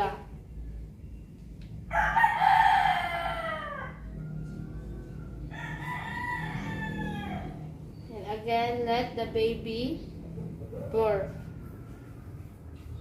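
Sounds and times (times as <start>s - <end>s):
rooster crowing: 1.8s - 8.0s.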